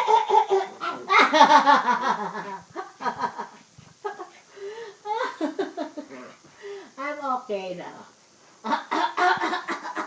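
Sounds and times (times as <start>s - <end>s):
woman laughing: 0.0s - 4.4s, 5.0s - 6.1s, 8.6s - 10.0s.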